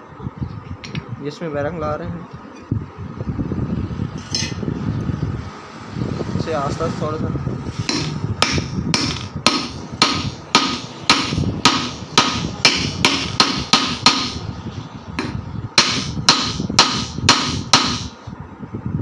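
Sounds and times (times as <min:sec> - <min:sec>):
hammer striking metal: 0:07.9 - 0:14.5, 0:15.2 - 0:18.2.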